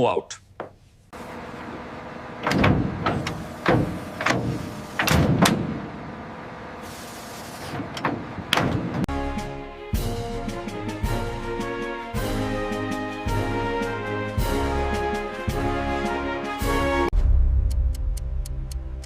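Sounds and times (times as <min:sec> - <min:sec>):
heavy thuds and clanks: 0:02.4 - 0:06.0, 0:07.7 - 0:09.1
music: 0:09.1 - 0:19.0.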